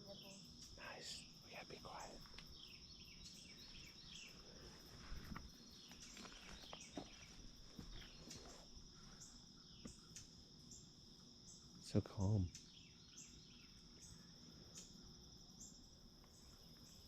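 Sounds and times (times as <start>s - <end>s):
high insect drone: 0.0s - 17.0s.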